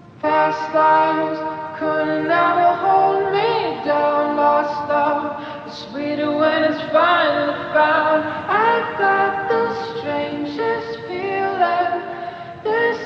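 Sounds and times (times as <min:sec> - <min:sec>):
voices singing gliding notes: 0:00.0 - 0:13.0.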